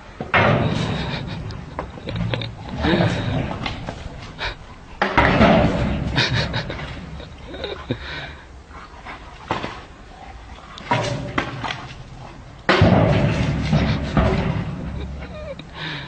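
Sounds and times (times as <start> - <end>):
sharp knocks: 12.7 - 15.2.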